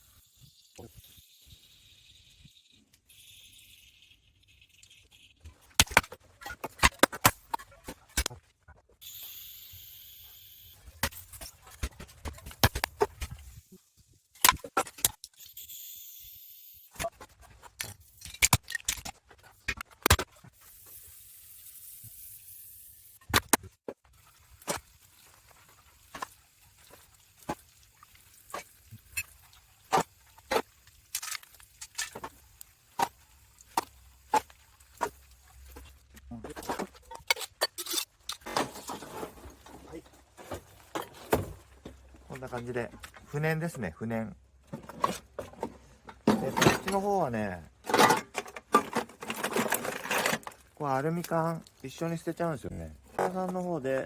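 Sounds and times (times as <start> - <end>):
hiss: 9.0 - 10.8, 20.6 - 23.2
rubbish clicking and clattering: 47.8 - 50.8.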